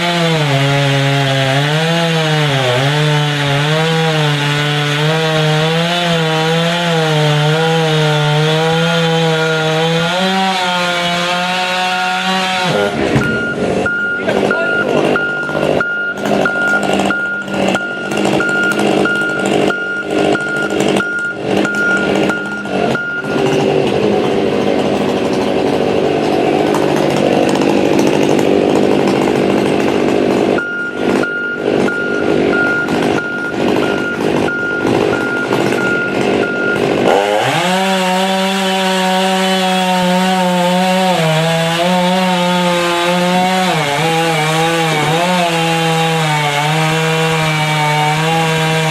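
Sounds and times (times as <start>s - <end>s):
chainsaw cutting wood: 0.0s - 48.9s
regular beeping: 13.1s - 23.9s, 30.6s - 37.1s.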